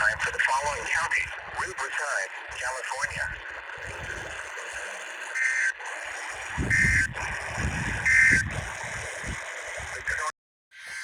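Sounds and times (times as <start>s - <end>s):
radio hiss: 0.0s - 3.6s, 9.7s - 11.0s
two-tone digital squawks: 0.0s - 11.0s.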